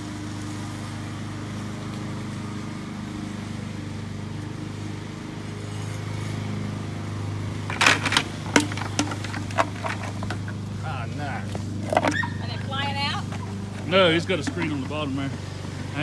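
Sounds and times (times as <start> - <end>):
sharp knocks and rustling: 7.6 - 10.8, 11.4 - 15.8.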